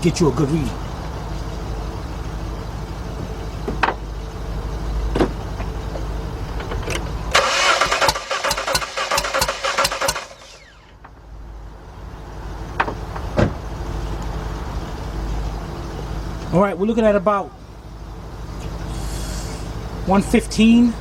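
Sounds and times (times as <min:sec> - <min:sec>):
low hum: 0:00.6 - 0:08.0
starter cranking engine: 0:06.8 - 0:11.0.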